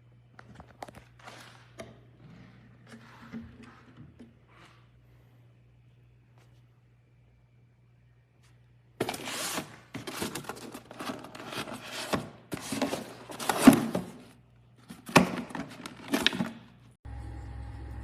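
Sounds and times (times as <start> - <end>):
faint low hum: 0.0 - 9.3
rustling and scraping: 0.4 - 5.0, 9.0 - 16.8.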